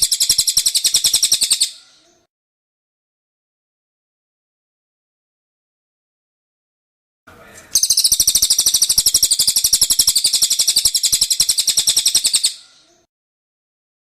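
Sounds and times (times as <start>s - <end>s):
bird trilling: 0.0s - 2.3s, 7.4s - 13.1s.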